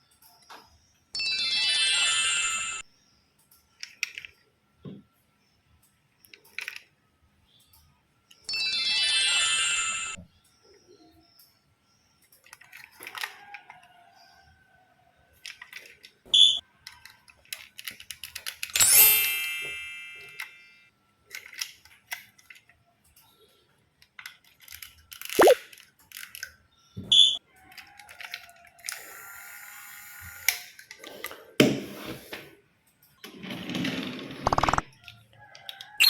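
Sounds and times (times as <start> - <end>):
toy clicks and knocks: 12.2 - 13.8, 15.4 - 20.7, 27.7 - 29.0
ringing chime: 18.8 - 20.8.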